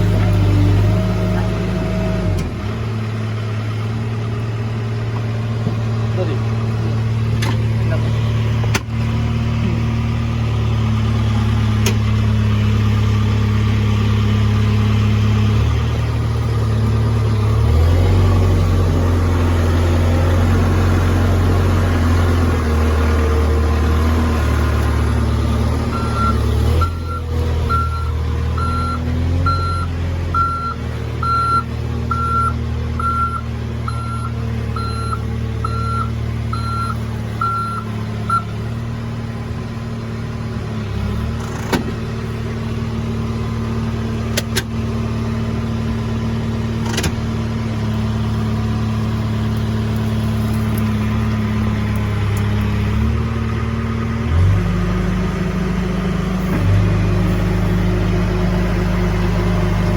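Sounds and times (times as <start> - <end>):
heavy diesel engine running: 0.0 - 59.9
reversing alarm beeping: 25.9 - 38.5.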